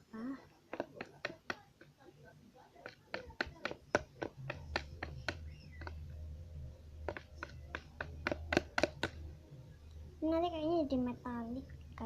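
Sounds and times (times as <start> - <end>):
low steady hum: 0.0 - 12.0
utensil tapping a container: 0.7 - 2.0, 2.8 - 6.1, 7.0 - 9.3.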